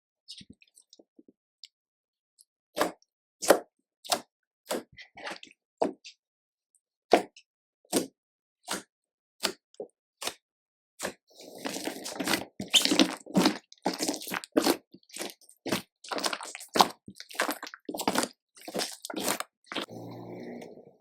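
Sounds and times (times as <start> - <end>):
wet slime squishing: 11.0 - 20.8
slime crackling and popping: 11.7 - 19.9.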